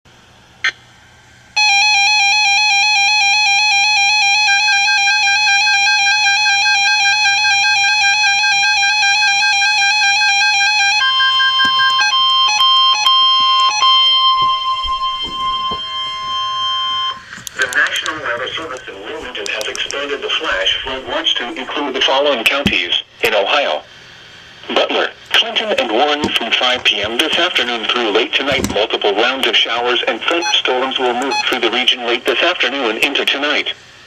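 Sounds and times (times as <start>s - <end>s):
electronic alert tone warbling: 1.6s - 17.3s
high steady tone: 1.6s - 17.9s
clicks: 17.3s - 20.1s.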